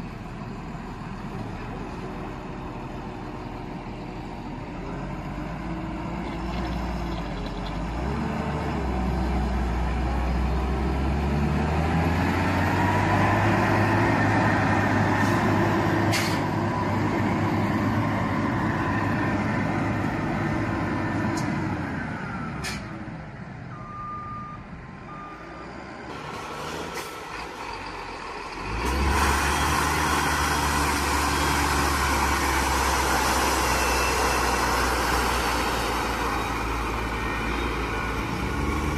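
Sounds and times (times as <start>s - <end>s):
heavy diesel machinery running: 0.0s - 38.9s
loud engine: 0.0s - 38.9s.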